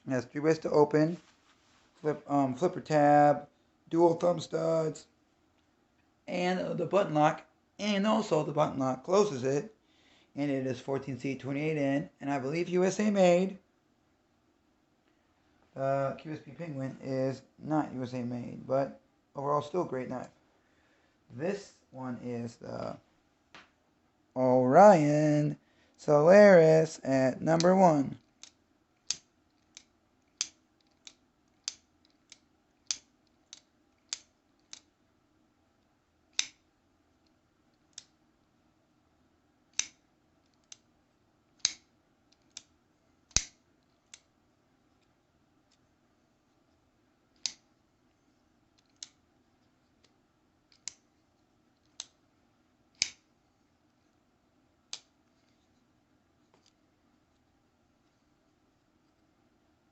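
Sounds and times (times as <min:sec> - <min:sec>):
folding knife clicking: 0:39.7 - 0:40.0, 0:41.6 - 0:42.7, 0:43.3 - 0:44.2, 0:53.0 - 0:53.2.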